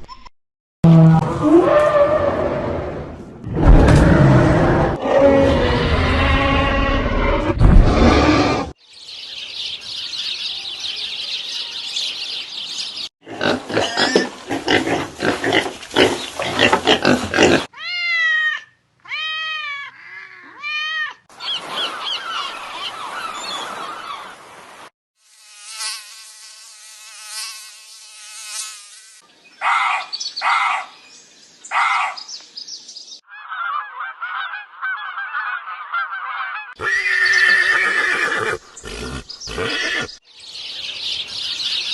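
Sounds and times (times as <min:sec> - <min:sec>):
rising and falling animal calls: 0:33.3 - 0:40.2
hissing animal calls: 0:36.7 - 0:40.2.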